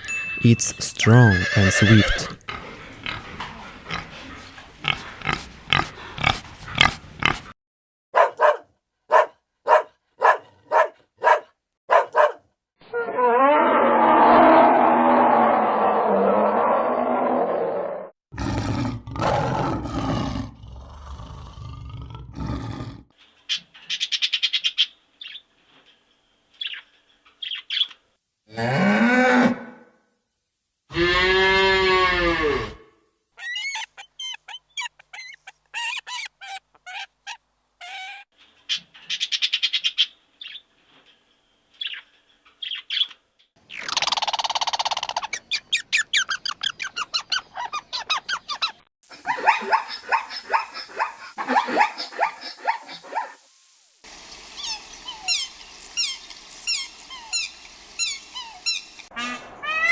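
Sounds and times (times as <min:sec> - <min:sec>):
drawn-out animal cries: 0:00.5 - 0:02.4, 0:54.1 - 0:59.9
short high-pitched animal calls: 0:00.5 - 0:02.4, 0:54.4 - 0:59.9.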